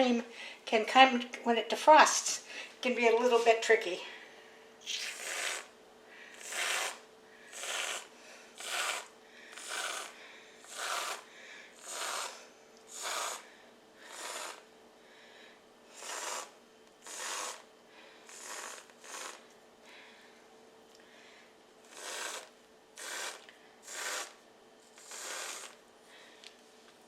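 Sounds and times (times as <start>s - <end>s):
aerosol can hissing bursts: 4.8s - 5.7s, 6.4s - 13.4s, 14.1s - 14.6s, 15.9s - 17.7s, 18.3s - 19.4s, 21.9s - 25.8s.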